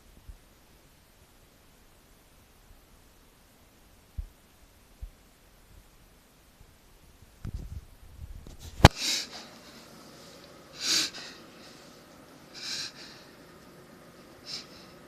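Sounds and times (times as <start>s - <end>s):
dog breathing harshly through nose: 8.8s - 13.4s, 14.4s - 15.0s.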